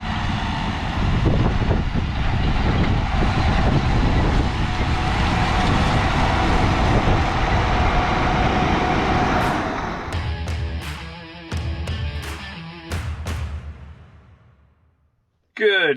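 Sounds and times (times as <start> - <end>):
farm machine engine rumbling: 0.0 - 10.8.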